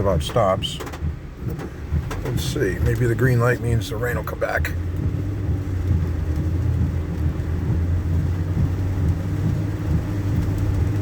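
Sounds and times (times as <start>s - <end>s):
car engine and road hum: 0.0s - 11.0s.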